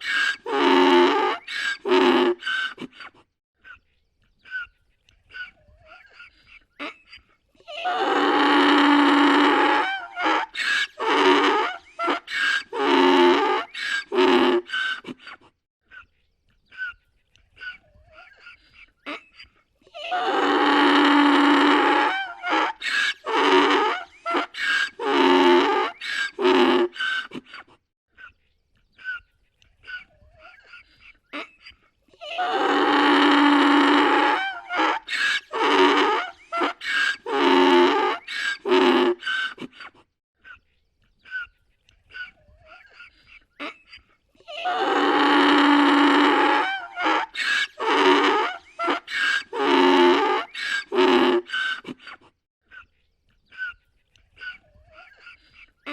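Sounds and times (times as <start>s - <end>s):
donkey braying: 0.0s - 2.9s, 7.6s - 15.3s, 19.9s - 27.6s, 32.2s - 39.8s, 44.4s - 52.2s.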